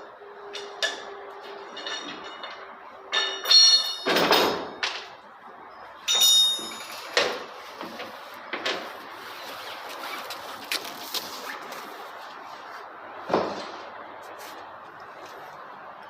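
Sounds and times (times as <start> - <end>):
metal objects clanking: 0.5 - 5.1, 6.1 - 8.9.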